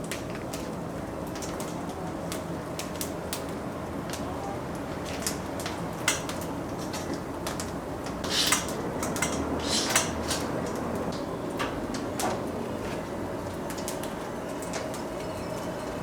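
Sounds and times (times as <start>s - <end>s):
brushy scraping bursts: 8.2s - 8.8s, 9.6s - 10.5s
kitchen utensils and dishes clattering: 8.2s - 10.6s.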